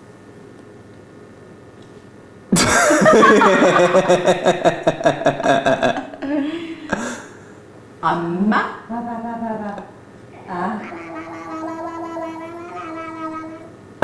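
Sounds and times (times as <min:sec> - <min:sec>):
infant squealing and laughing: 0:10.4 - 0:13.8.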